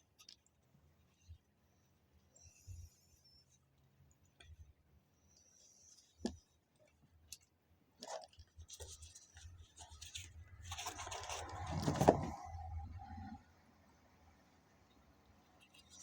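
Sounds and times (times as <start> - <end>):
leather pouch rustling and scraping: 8.0 - 12.6.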